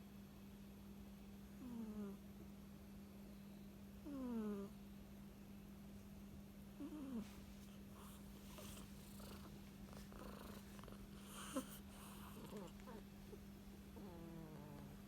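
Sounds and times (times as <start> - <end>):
steady low hum: 0.0 - 15.0
cat purring: 1.6 - 2.2, 4.0 - 4.7, 6.7 - 15.0.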